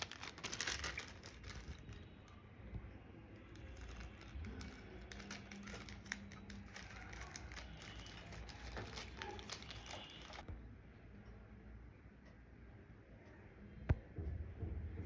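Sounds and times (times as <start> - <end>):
packaging crinkling: 0.0 - 2.2, 3.5 - 10.4.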